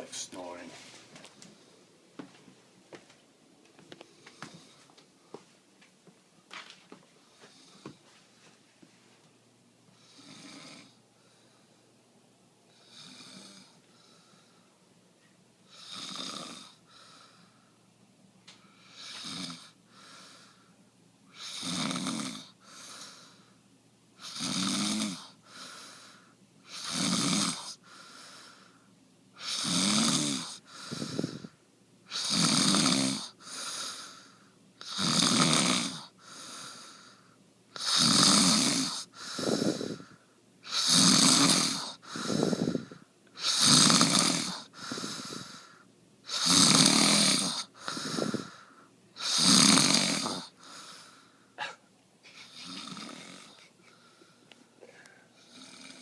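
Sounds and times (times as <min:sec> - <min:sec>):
soft breath sound: 0:03.8 - 0:05.7, 0:09.9 - 0:15.9, 0:16.8 - 0:20.9, 0:22.5 - 0:23.7, 0:25.3 - 0:26.4, 0:27.7 - 0:29.5, 0:30.4 - 0:31.6, 0:33.3 - 0:34.6, 0:36.1 - 0:37.4, 0:38.9 - 0:40.4, 0:41.7 - 0:43.5, 0:44.5 - 0:45.9, 0:47.6 - 0:49.0, 0:50.5 - 0:56.0
person snoring: 0:15.7 - 0:16.8, 0:18.9 - 0:20.6, 0:21.3 - 0:23.4, 0:24.2 - 0:28.7, 0:29.4 - 0:31.5, 0:32.1 - 0:37.2, 0:37.8 - 0:54.2, 0:54.8 - 0:56.0.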